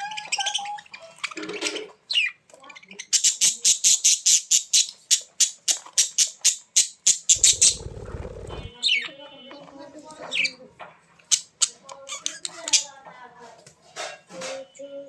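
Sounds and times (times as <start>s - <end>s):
bird squawking: 7.4s - 8.7s
low rumble: 7.4s - 8.7s.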